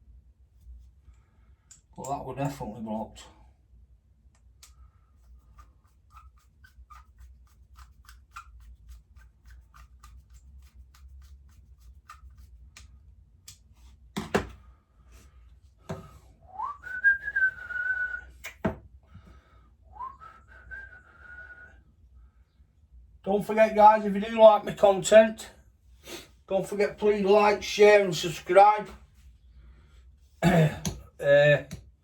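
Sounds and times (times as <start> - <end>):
man whistling two notes: 16.5 - 18.5, 19.9 - 21.8.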